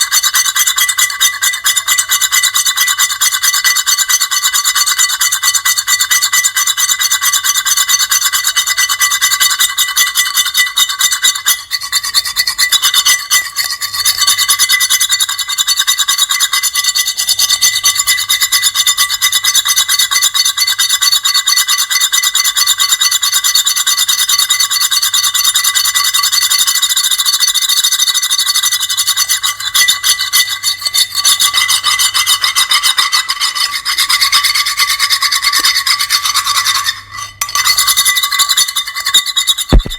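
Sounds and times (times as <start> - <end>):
high-pitched grating scraping: 29.3 - 39.9.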